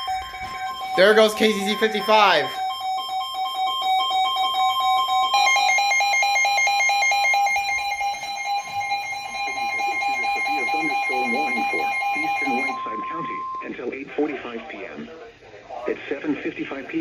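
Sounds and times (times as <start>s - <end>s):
rapid pulsing beep: 0.0s - 13.8s
steady alert tones: 0.0s - 13.8s
faint broadcast voice: 9.3s - 17.0s.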